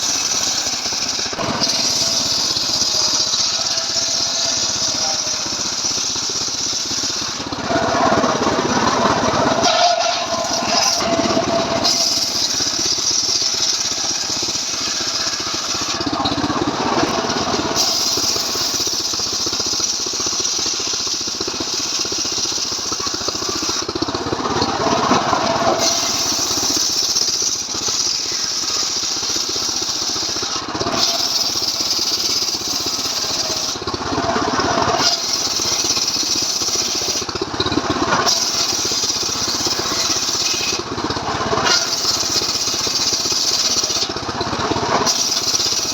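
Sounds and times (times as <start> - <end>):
chainsaw ripping a log: 0.0 - 19.3, 22.4 - 45.9.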